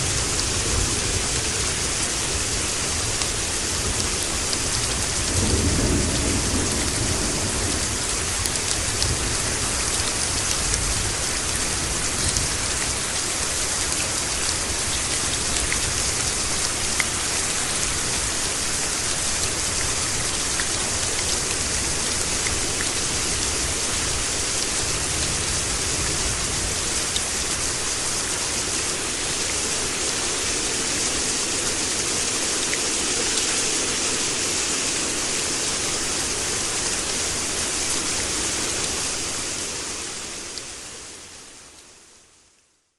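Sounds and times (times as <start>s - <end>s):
rain pattering: 0.0s - 42.1s
low thunder rumble: 4.7s - 12.6s.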